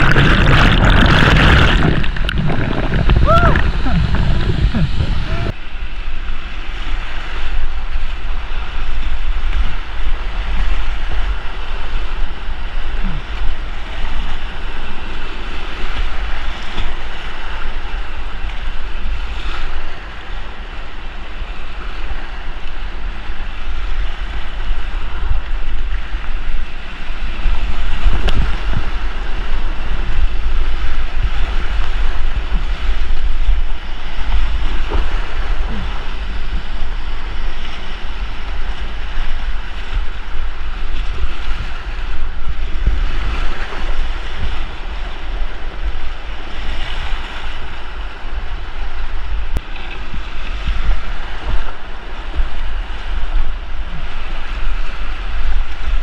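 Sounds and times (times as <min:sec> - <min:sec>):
whitewater rushing: 0:00.0 - 0:06.0
wind buffeting microphone: 0:00.0 - 0:56.0.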